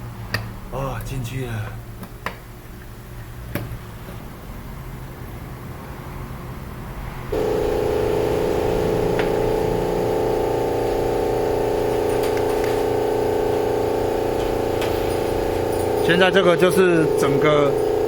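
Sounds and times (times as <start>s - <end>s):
machine motor whirring hum: 7.2s - 18.0s.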